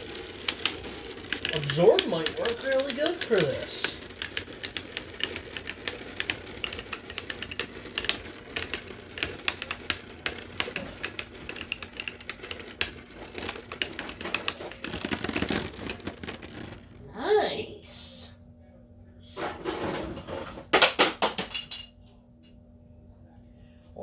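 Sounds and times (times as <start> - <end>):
spinning tops clashing: 0.0 - 17.0.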